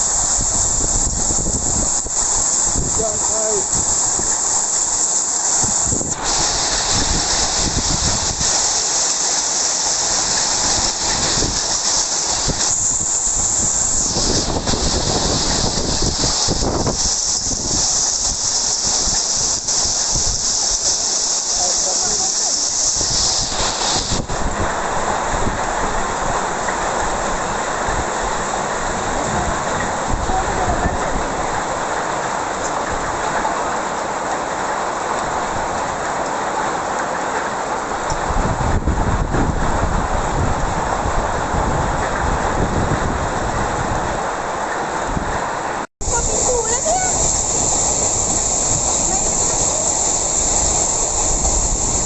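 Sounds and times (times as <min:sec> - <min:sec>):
hailstones striking: 0:00.0 - 0:25.3, 0:46.0 - 0:52.0
heavy rain hissing: 0:00.0 - 0:52.0.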